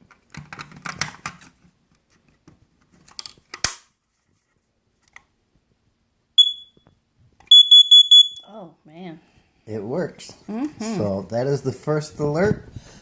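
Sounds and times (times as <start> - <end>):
shrill high-pitched alarm beep: 6.4 - 6.8, 7.5 - 8.5.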